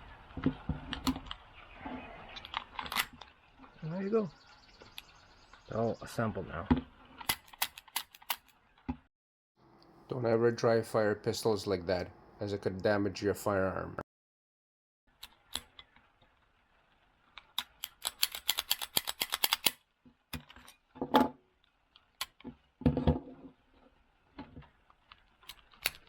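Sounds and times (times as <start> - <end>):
parts knocking on hard surface: 22.8 - 23.5.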